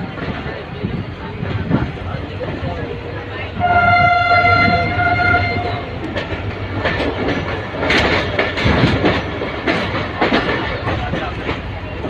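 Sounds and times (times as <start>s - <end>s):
train rumbling on track: 0.0s - 12.0s
wheels clattering over rail joints: 0.0s - 12.0s
train horn: 3.6s - 5.9s.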